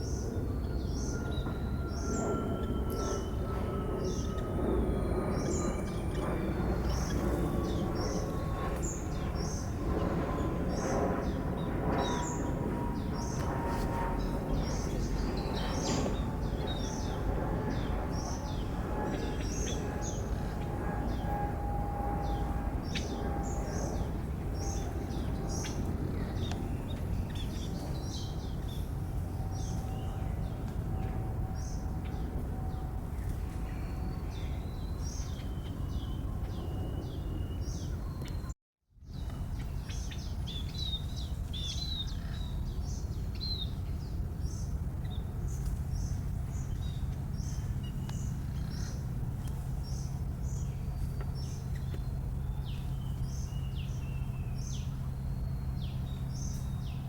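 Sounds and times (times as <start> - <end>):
birds chirping: 0.0 - 38.5.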